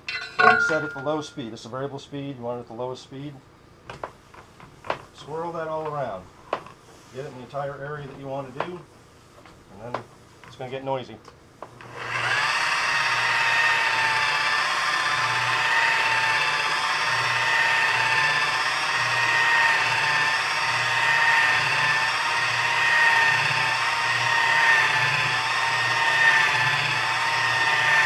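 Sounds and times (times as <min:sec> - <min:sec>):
electric buffer motor whine: 0:11.8 - 0:28.0.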